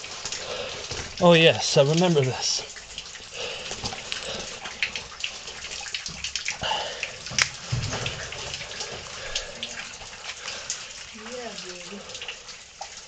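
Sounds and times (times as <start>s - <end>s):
water splashing and trickling: 0.0s - 13.0s
low thud: 7.3s - 9.1s
knocks and scrapes: 7.3s - 9.2s.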